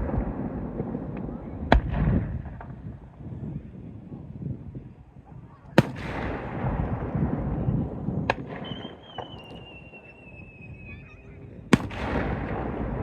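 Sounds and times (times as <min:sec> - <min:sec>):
fireworks bangs: 0:00.0 - 0:13.0
thin high whistle: 0:08.6 - 0:11.1.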